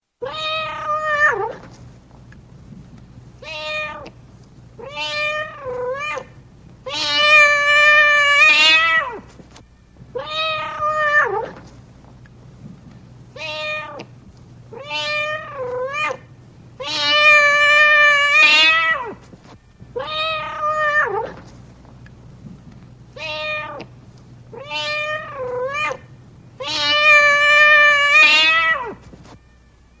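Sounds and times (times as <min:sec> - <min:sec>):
cat meowing: 0:00.2 - 0:01.7, 0:03.4 - 0:04.2, 0:04.8 - 0:09.3, 0:10.1 - 0:11.6, 0:13.4 - 0:14.1, 0:14.7 - 0:19.2, 0:20.0 - 0:21.5, 0:23.2 - 0:23.9, 0:24.5 - 0:29.9.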